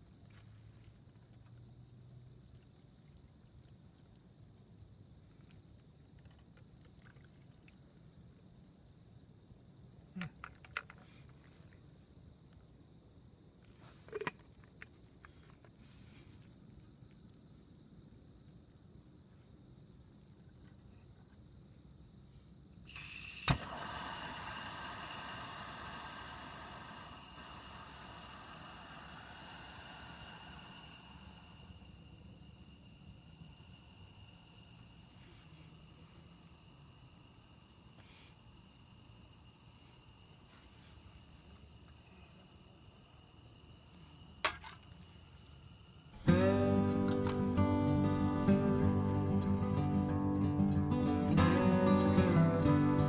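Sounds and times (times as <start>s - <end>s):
insects trilling: 20.6s - 53.0s
steady hiss: 22.9s - 32.7s, 46.2s - 53.0s
sharp click: 47.0s - 47.5s.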